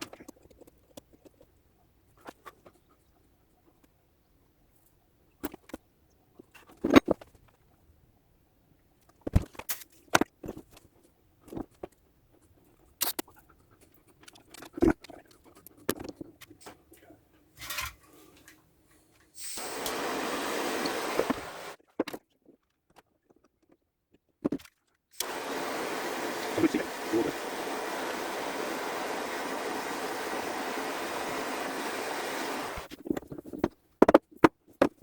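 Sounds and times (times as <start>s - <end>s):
blowtorch flame hissing: 19.4s - 21.8s, 25.2s - 32.9s.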